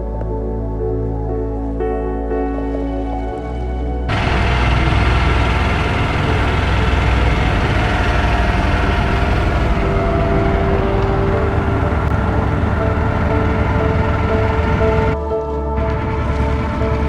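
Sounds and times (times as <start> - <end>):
background music: 0.0 - 17.0
motor boat engine rumbling: 4.1 - 17.0.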